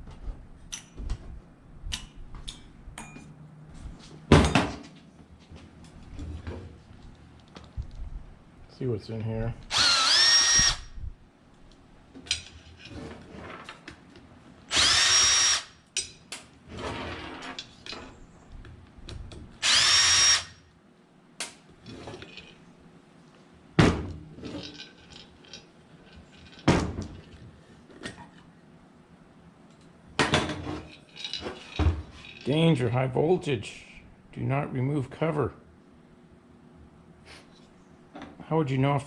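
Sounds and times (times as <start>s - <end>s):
power drill whine: 9.7s - 11.0s, 14.7s - 15.8s, 19.6s - 20.6s
clatter of parts handled: 24.4s - 28.4s, 30.3s - 32.6s.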